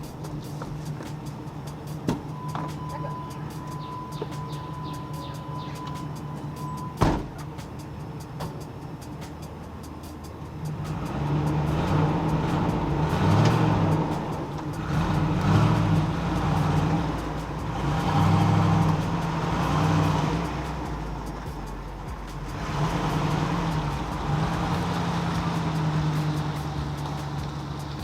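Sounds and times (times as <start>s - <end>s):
truck engine running: 0.0s - 28.0s.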